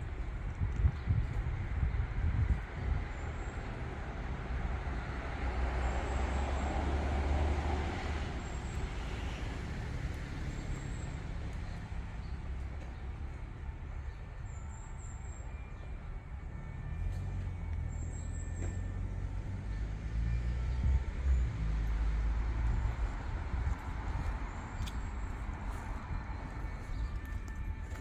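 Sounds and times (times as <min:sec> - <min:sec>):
low rumble of city traffic: 0:00.0 - 0:28.0
vehicle passing close by: 0:04.7 - 0:11.0.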